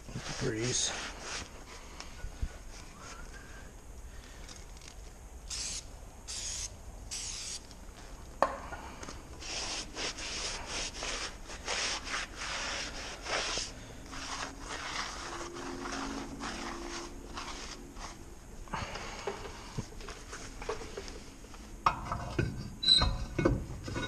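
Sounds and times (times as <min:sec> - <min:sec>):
rubbing strokes: 0:00.2 - 0:01.8, 0:09.4 - 0:18.4
scraping strokes on metal hub: 0:09.4 - 0:18.3.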